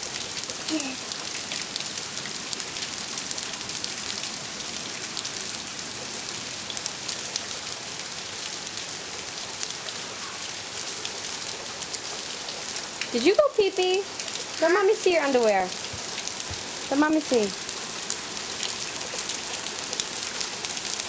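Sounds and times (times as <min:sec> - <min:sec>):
steady rain falling: 0:00.0 - 0:21.0
raindrops ticking: 0:09.6 - 0:21.0.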